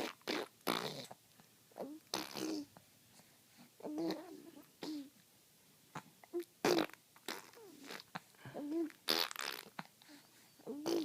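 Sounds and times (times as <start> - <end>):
baby blowing raspberries: 0.0 - 1.2, 6.6 - 11.0
baby cooing: 1.8 - 2.8, 3.8 - 5.2, 5.9 - 11.0.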